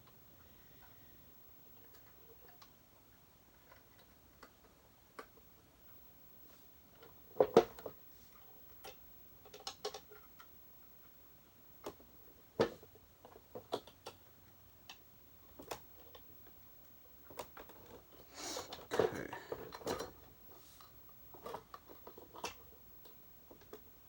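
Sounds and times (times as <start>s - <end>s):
vacuum parts clicking and knocking: 7.0s - 10.5s, 17.2s - 20.3s.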